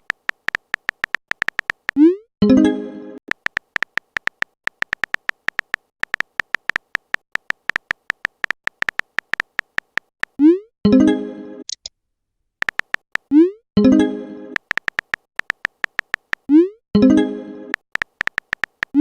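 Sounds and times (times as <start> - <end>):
electronic typing clicks: 0.0 - 2.2, 3.3 - 10.5, 12.6 - 13.5, 14.6 - 16.6, 17.7 - 19.0.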